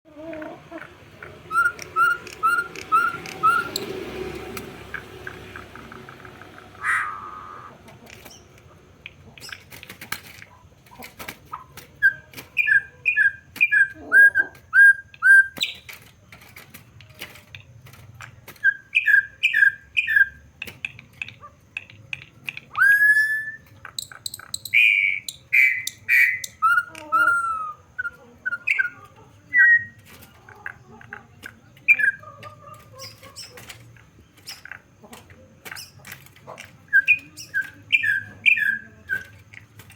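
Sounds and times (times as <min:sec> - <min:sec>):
sharp bird clicks: 0:01.2 - 0:03.9, 0:07.9 - 0:11.7, 0:12.3 - 0:27.3, 0:30.1 - 0:39.9
bird whistling song: 0:01.5 - 0:04.0, 0:06.0 - 0:08.5, 0:12.0 - 0:16.0, 0:18.6 - 0:20.4, 0:22.7 - 0:30.0, 0:31.9 - 0:32.2, 0:36.9 - 0:39.4.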